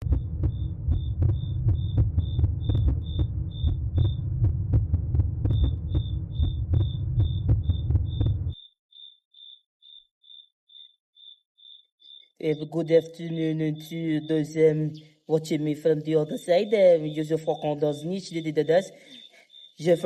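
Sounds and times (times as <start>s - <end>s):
deep throbbing heartbeat-like drone: 0.0s - 8.6s.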